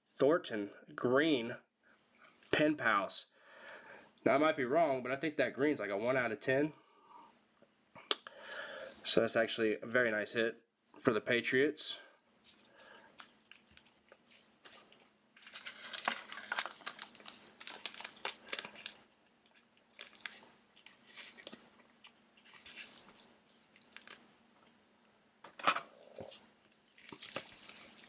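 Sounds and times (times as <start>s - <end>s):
card wrappers crinkling: 12.3s - 24.8s, 25.9s - 28.0s
sharp wrapper crackle: 12.4s - 24.4s, 26.9s - 28.0s.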